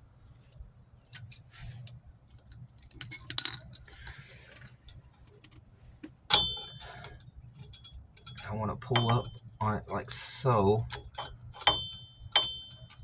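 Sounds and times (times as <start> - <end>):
metallic clinks of brake hardware: 1.0 - 1.4.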